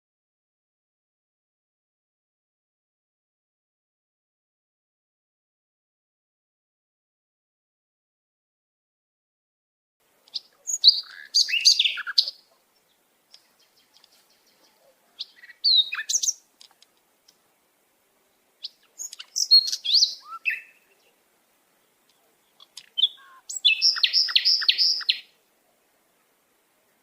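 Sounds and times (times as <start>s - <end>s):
songbird singing: 10.0s - 27.0s.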